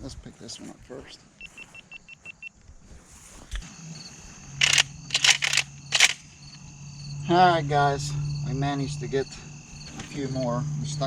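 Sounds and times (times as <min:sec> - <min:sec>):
steady low hum: 0:03.6 - 0:11.0.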